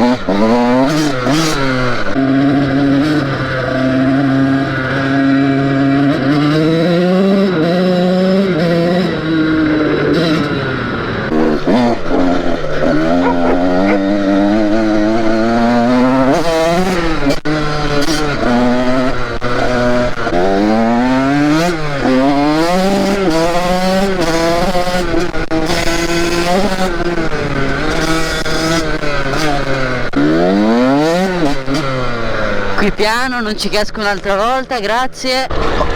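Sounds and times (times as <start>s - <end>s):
motocross engine revving: 0.0s - 4.5s, 10.1s - 32.8s.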